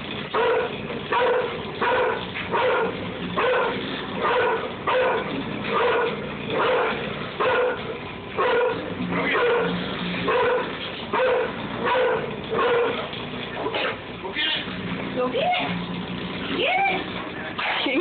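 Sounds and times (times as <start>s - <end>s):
dog barking: 0.3s - 13.0s, 17.6s - 17.9s.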